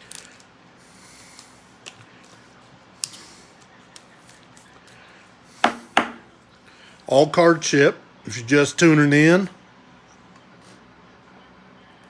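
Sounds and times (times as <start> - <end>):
trading cards clicking and tapping: 5.6 - 6.2.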